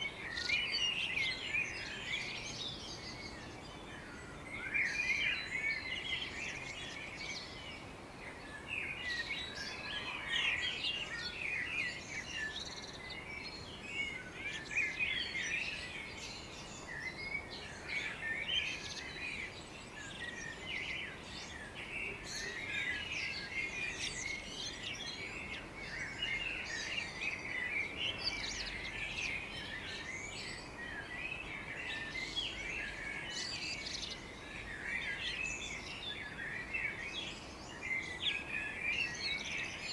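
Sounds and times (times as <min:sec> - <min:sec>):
birds chirping and singing: 0:08.4 - 0:39.9.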